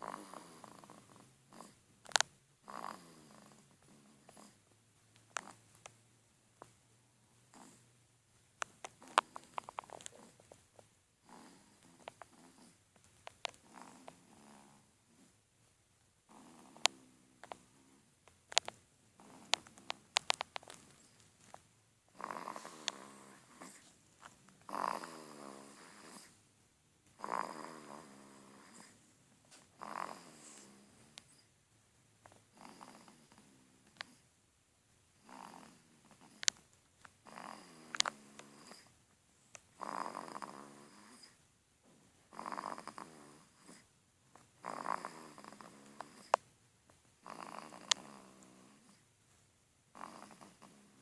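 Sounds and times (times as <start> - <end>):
baby snoring: 0.0 - 1.8, 2.6 - 4.6, 7.5 - 8.0, 9.0 - 10.5, 11.2 - 12.8, 13.6 - 15.3, 16.3 - 18.0, 19.2 - 21.2, 22.1 - 23.9, 24.6 - 26.4, 27.2 - 29.0, 29.7 - 31.5, 32.5 - 34.2, 35.2 - 36.5, 37.2 - 38.9, 39.7 - 41.4, 42.3 - 43.9, 44.6 - 46.4, 47.2 - 49.0, 49.9 - 51.0.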